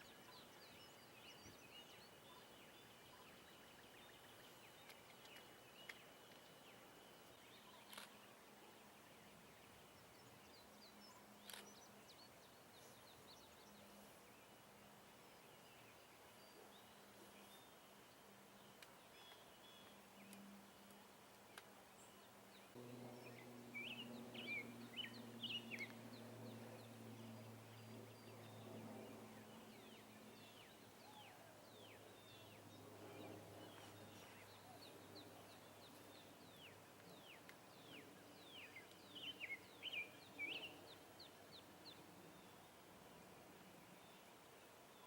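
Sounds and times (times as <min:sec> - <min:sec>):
low steady hum: 0:00.0 - 0:45.0
bird chirps: 0:23.0 - 0:42.6.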